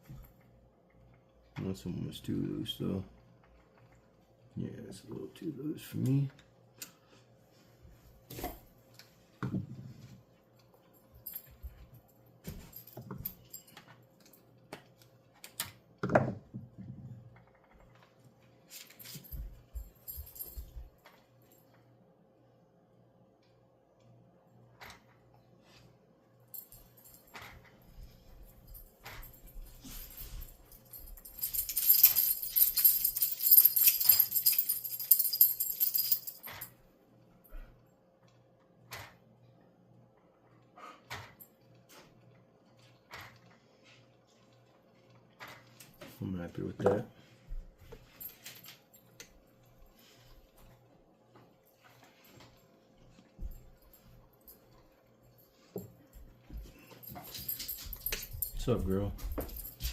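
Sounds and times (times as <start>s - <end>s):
small metal tools clinking: 28.7s - 36.7s, 56.6s - 59.9s
small metal pieces jingling: 29.8s - 36.6s.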